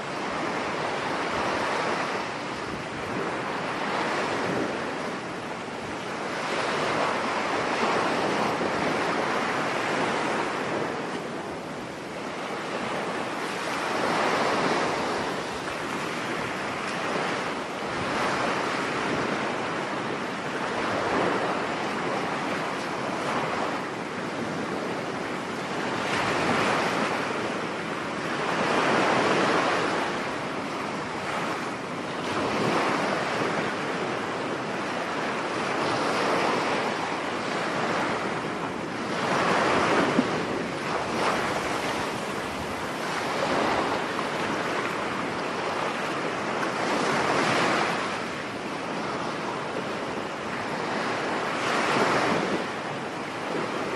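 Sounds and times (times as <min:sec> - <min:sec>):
rough surf breaking on beach: 0:00.0 - 0:53.9
wind blowing: 0:35.8 - 0:49.9.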